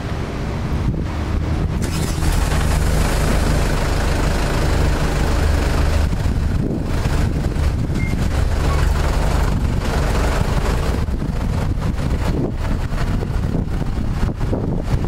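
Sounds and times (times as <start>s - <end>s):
wind buffeting microphone: 0.0s - 15.0s
pressure washer engine running: 1.8s - 12.8s.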